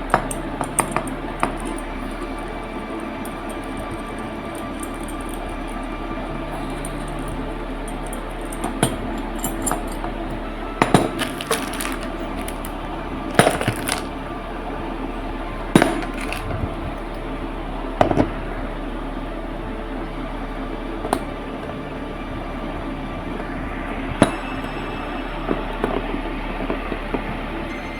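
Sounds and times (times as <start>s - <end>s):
steady hum: 0.0s - 27.9s
small metal parts clinking: 0.2s - 1.9s, 10.9s - 14.2s, 15.8s - 16.6s.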